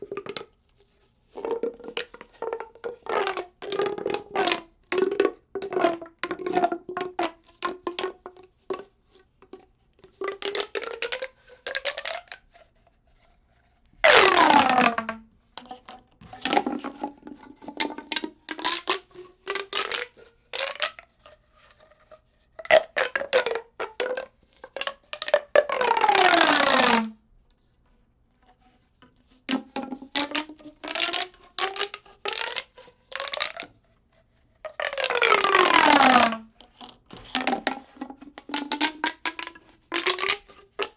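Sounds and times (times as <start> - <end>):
ridged tube clicking: 14.0 - 21.0, 34.6 - 40.9
ridged tube snapping together: 14.0 - 21.0, 34.8 - 40.9.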